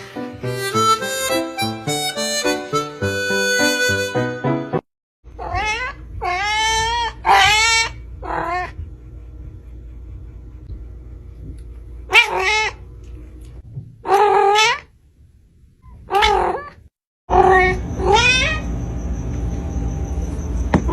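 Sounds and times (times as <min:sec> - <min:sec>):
low steady hum: 0:05.3 - 0:14.1
cat meowing: 0:05.4 - 0:08.8, 0:12.1 - 0:12.8, 0:14.1 - 0:14.9, 0:16.1 - 0:18.7.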